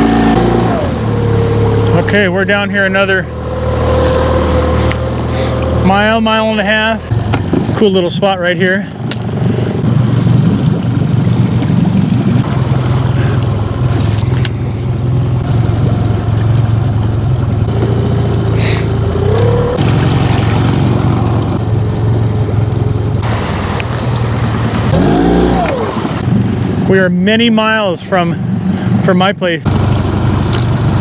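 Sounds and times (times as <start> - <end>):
vehicle engine droning: 0.0 - 8.0, 12.3 - 26.9
short rising whine: 23.2 - 26.2.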